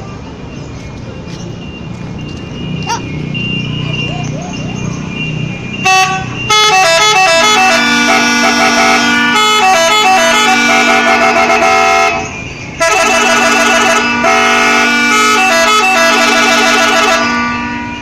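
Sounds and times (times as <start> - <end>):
bus horn playing a melody: 5.8 - 18.0.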